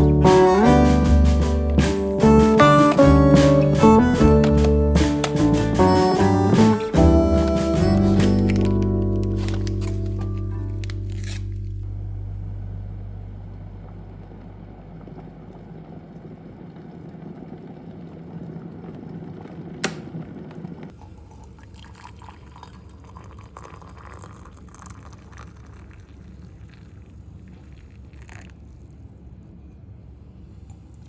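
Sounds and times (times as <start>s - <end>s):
water pouring: 20.9s - 29.2s.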